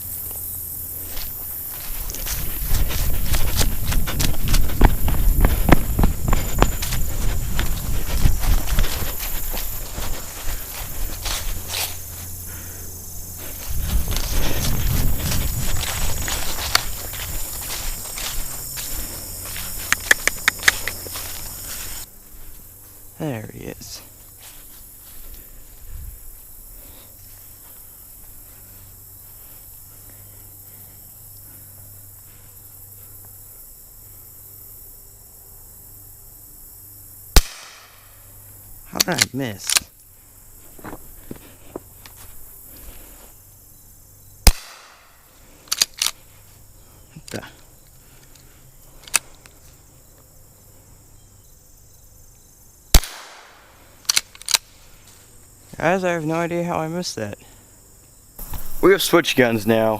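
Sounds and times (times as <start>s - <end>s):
high-pitched insect hiss: 0.0s - 59.9s
rifle shot with echo: 37.4s - 38.0s, 44.4s - 45.0s, 52.9s - 53.5s.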